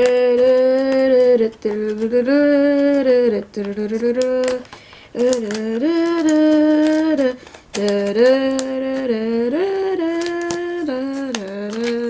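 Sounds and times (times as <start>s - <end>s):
person singing wordless tune: 0.0s - 12.0s
plastic packaging crackling: 0.0s - 12.0s.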